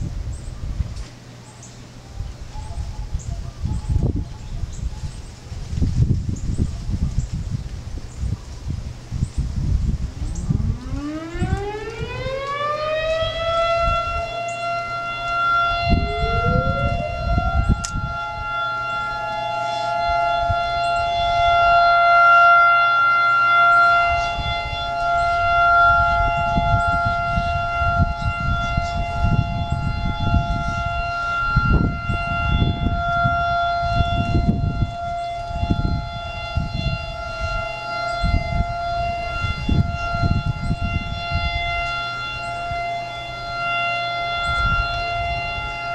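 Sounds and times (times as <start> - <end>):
higher-pitched siren: 2.0 - 6.9, 9.4 - 45.9
warning siren winding up: 10.3 - 45.9.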